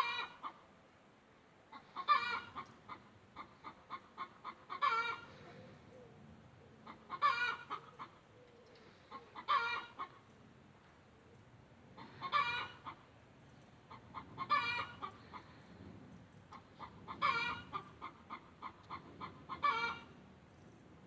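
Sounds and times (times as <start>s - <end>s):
hen clucking: 1.7s - 5.3s, 6.8s - 8.2s, 9.3s - 10.2s, 12.0s - 13.0s, 13.9s - 15.4s, 16.5s - 20.1s.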